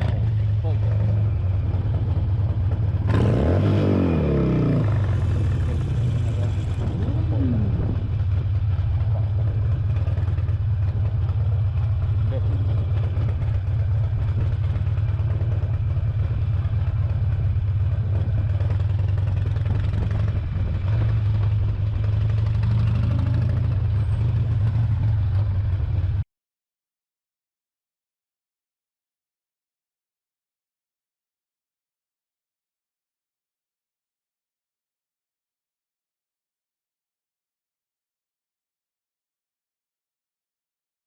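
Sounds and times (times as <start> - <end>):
motorcycle engine rumbling: 0.0 - 26.2.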